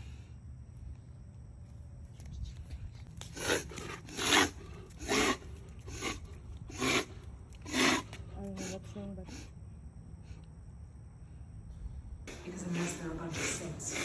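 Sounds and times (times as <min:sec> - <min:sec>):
dog reverse sneezing: 0:03.3 - 0:08.7.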